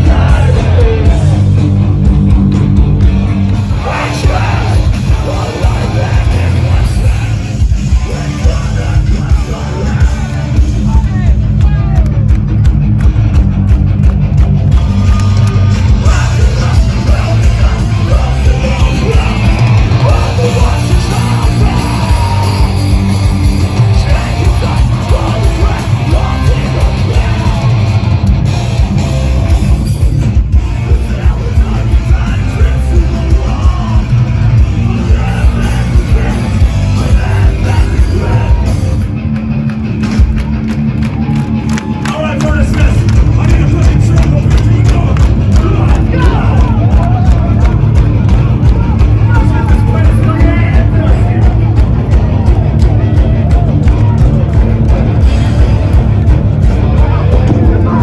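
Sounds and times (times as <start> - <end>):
yelled vocals: 0.0 - 39.3, 41.2 - 58.0
bass: 0.0 - 58.0
distorted guitars: 0.0 - 58.0
drums: 0.0 - 58.0.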